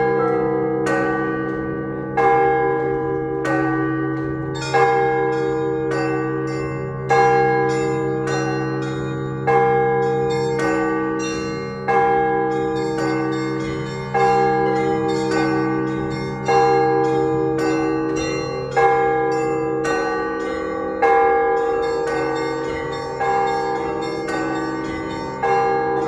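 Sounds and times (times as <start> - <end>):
heavy bell strokes: 0.0 - 26.0
hum of large bells: 0.0 - 26.0
small bells chiming: 3.5 - 26.0.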